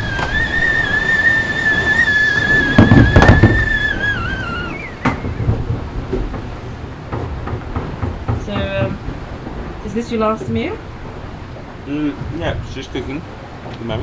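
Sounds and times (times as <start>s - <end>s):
high steady whistling tone: 0.0s - 5.9s
heavy thumps: 0.0s - 13.3s.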